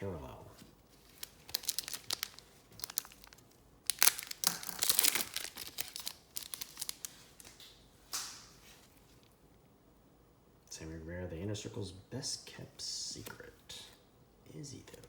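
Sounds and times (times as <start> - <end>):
foil wrapper crinkling and tearing: 0.9 - 7.6.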